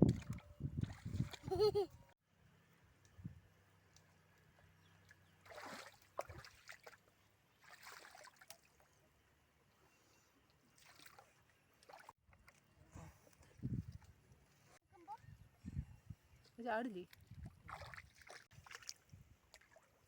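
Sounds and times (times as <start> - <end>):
muddy water splashing: 0.0 - 1.8, 4.9 - 9.1, 10.6 - 14.6, 16.4 - 20.0.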